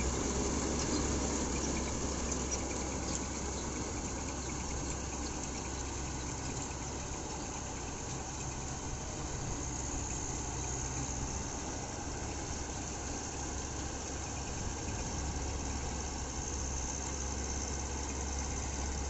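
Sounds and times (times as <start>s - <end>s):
combine harvester running: 0.0s - 19.0s.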